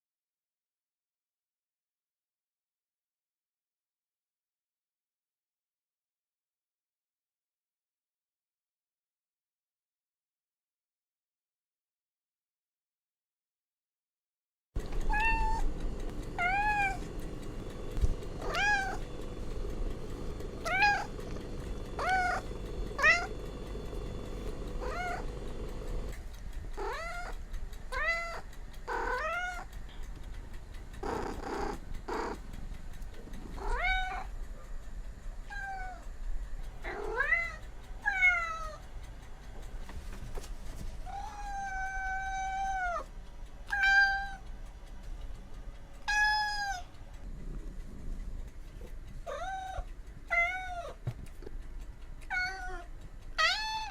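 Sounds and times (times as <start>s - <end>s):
cat meowing: 15.0s - 15.7s, 16.4s - 17.0s, 18.4s - 19.1s, 20.6s - 21.2s, 22.0s - 22.4s, 23.0s - 23.4s, 24.8s - 25.3s, 26.8s - 29.7s, 33.6s - 34.3s, 35.5s - 36.0s, 36.8s - 38.8s, 41.1s - 43.1s, 43.7s - 44.4s, 46.0s - 46.9s, 49.2s - 51.0s, 52.3s - 53.9s.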